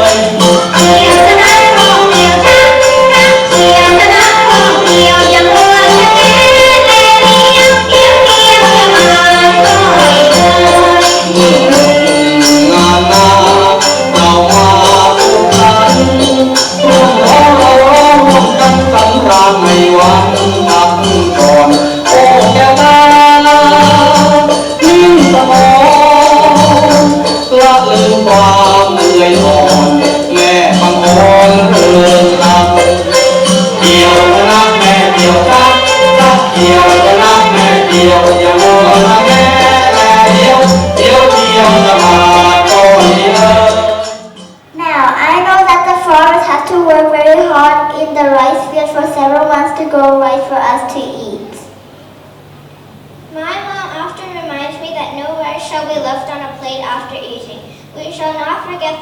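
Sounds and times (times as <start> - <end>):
folk singing: 0.0 - 44.4
hand percussion with jingle: 0.0 - 45.4.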